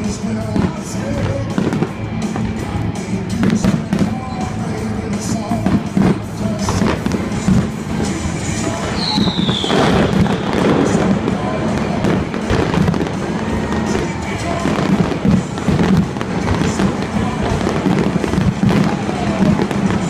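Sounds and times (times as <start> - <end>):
fireworks bursting and crackling: 0.0 - 20.0
loud music: 0.0 - 20.0
falling firework whistle: 8.8 - 11.0.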